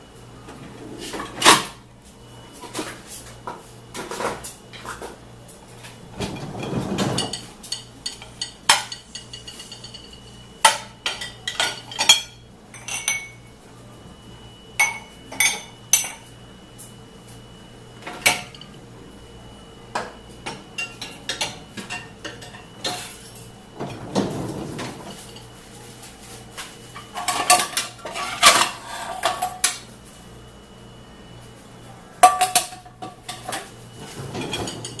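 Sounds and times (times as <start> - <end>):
dishes and cutlery clattering: 6.2 - 13.4, 27.0 - 29.8, 32.2 - 35.0.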